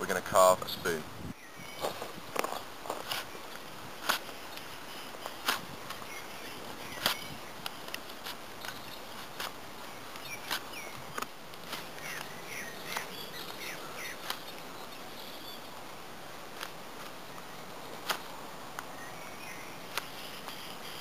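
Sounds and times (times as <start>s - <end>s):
steady outdoor hiss: 0.0s - 21.0s
knife carving wood: 4.0s - 6.0s, 6.9s - 10.7s.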